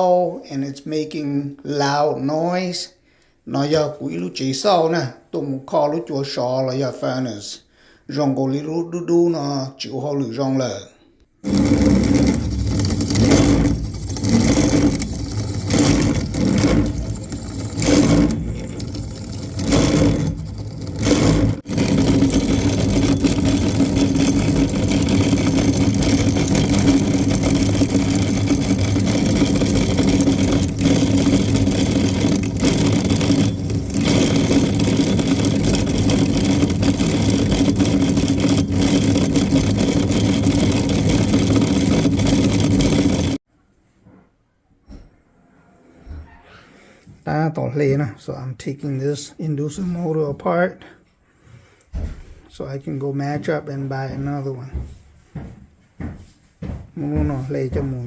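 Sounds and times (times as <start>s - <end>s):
blower motor humming: 11.4s - 43.4s.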